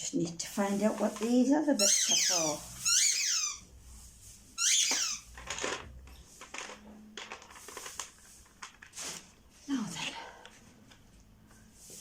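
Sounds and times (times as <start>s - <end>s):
loud high squeak: 1.8s - 3.7s, 4.6s - 5.3s
plastic parts clicking and rattling: 5.4s - 9.0s.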